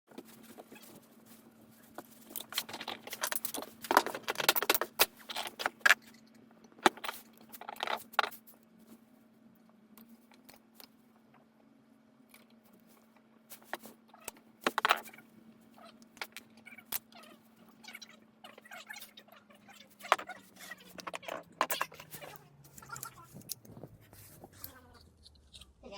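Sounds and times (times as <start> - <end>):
faint steady hum: 0.1 - 25.9
metal parts and tools rattling: 1.7 - 8.4, 13.5 - 15.2, 16.1 - 24.7.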